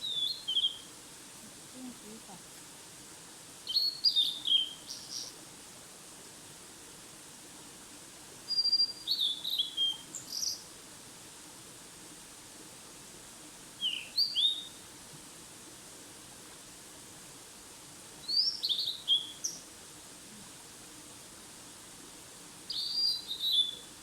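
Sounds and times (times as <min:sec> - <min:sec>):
songbird singing: 0:00.0 - 0:00.9, 0:03.6 - 0:05.4, 0:08.5 - 0:10.6, 0:13.8 - 0:14.8, 0:18.2 - 0:19.7, 0:22.7 - 0:23.9
background hiss: 0:00.0 - 0:24.0.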